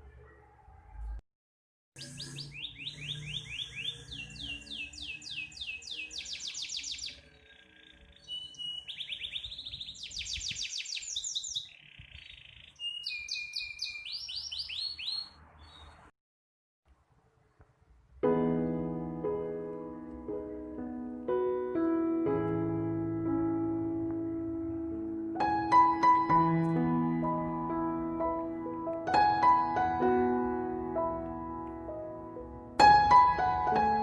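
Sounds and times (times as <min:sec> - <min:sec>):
songbird whistling: 0:02.0 - 0:15.9.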